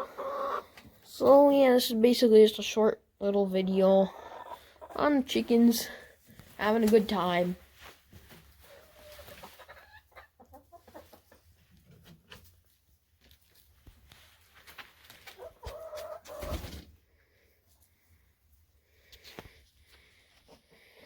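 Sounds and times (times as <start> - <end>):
hens clucking: 0.0 - 1.1, 3.9 - 5.9, 8.5 - 12.4, 15.2 - 16.8.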